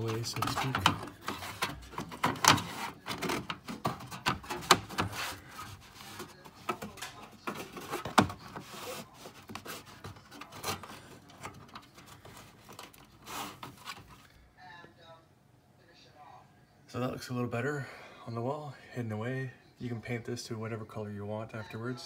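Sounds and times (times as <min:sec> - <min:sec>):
handling clicks and rubbing: 0:00.0 - 0:14.2.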